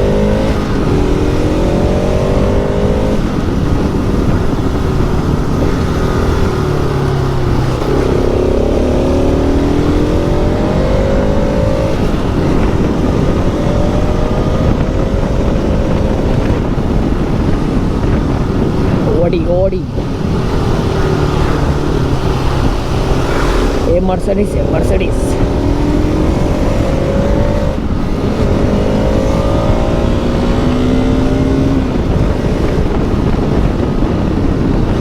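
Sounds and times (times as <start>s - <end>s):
motorcycle engine accelerating: 0.0s - 35.0s.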